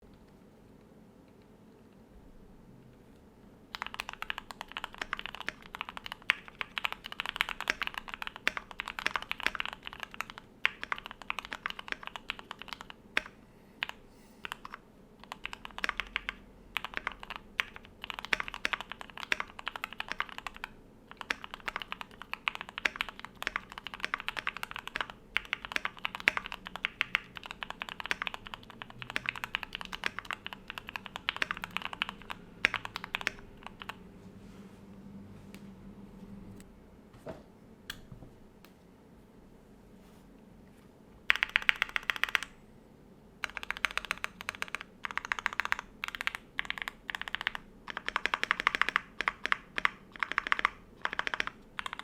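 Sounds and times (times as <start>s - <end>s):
mechanical keyboard typing: 3.7s - 34.0s, 41.3s - 42.6s, 43.4s - 52.0s.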